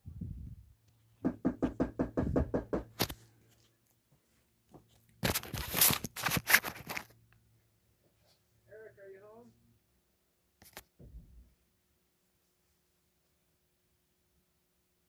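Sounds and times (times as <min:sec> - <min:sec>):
knocking on a door: 0:01.2 - 0:03.0.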